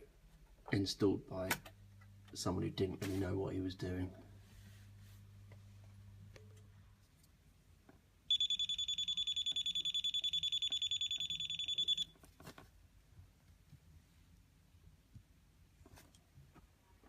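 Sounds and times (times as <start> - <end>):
piezo buzzer pulsing: 8.3 - 12.0.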